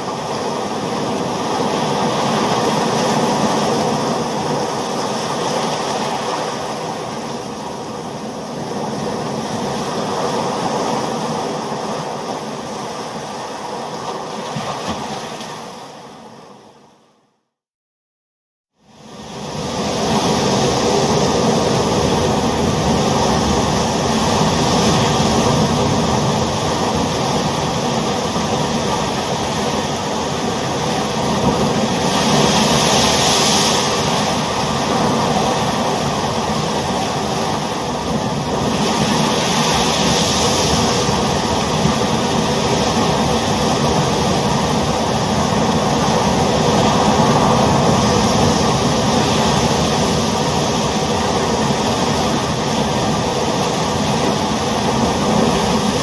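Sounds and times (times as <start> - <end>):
ocean waves rushing: 19.1 - 56.0.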